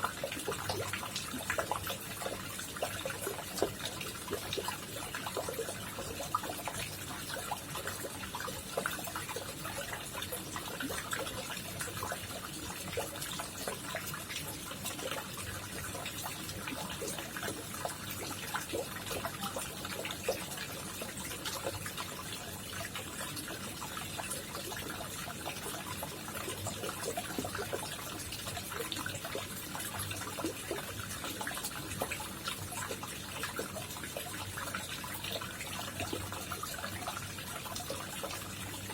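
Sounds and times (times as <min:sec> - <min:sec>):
water trickling and splashing: 0:00.0 - 0:38.9.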